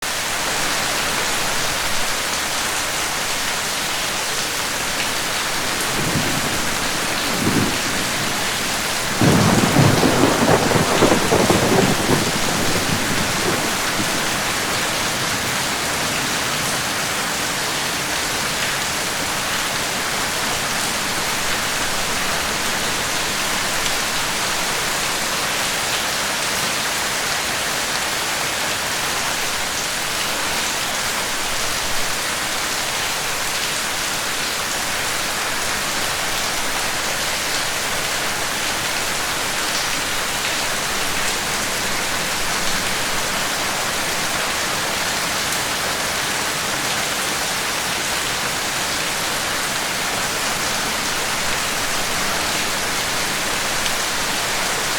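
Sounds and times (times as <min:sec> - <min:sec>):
steady rain: 0:00.0 - 0:54.9
thunder rumbling: 0:04.6 - 0:17.2.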